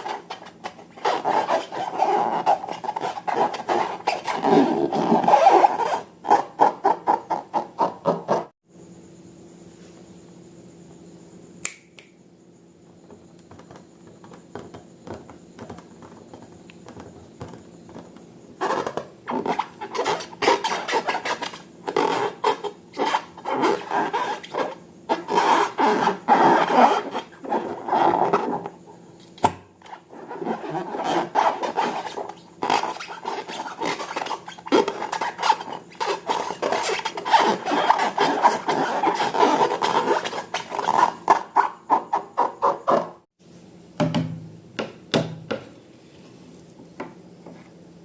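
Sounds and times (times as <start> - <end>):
slime scraping and rubbing: 0.0 - 8.6, 18.6 - 28.6, 29.9 - 43.2.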